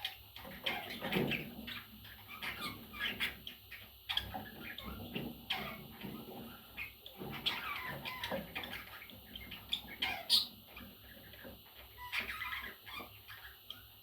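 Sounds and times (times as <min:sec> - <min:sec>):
budgerigars chattering: 0:00.0 - 0:14.0.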